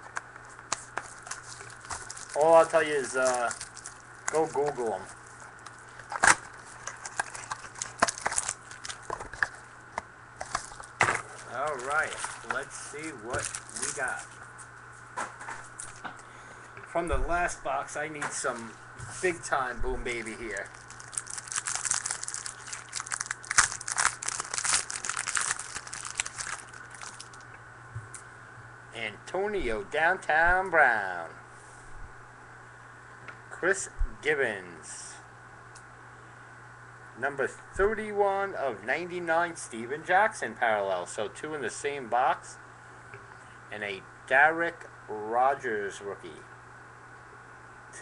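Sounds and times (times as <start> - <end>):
card pack wrapper crinkling: 0.7 - 9.7, 10.4 - 14.4, 20.0 - 27.5.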